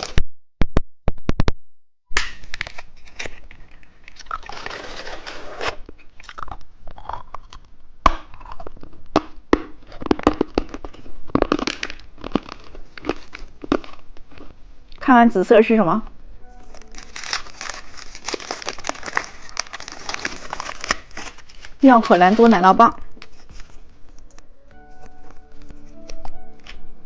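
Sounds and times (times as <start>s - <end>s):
plastic wrapper crinkling and tearing: 2.2s - 7.7s, 9.8s - 14.6s, 16.6s - 24.3s
hard lollipop being crunched: 6.2s - 14.5s.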